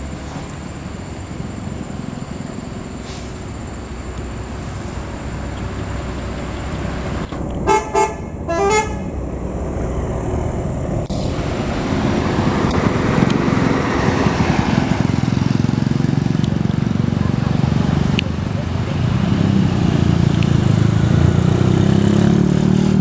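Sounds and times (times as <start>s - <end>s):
engine and road noise: 0.0s - 23.0s
musical bus horn: 7.6s - 9.3s.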